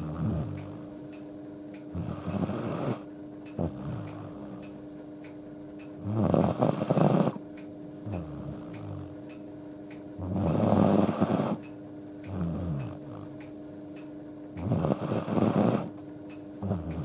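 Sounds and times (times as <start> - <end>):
dog snoring loudly: 0.0 - 1.1, 1.9 - 4.7, 6.0 - 7.4, 8.0 - 9.2, 10.2 - 11.6, 12.2 - 13.4, 14.6 - 17.0.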